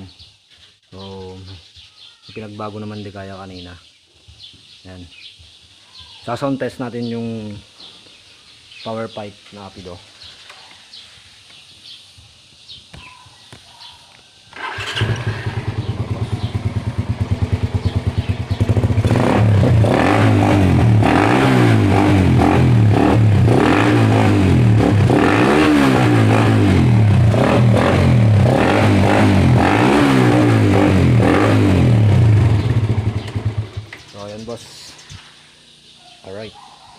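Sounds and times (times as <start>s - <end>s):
motorcycle engine idling and revving: 14.5s - 36.4s.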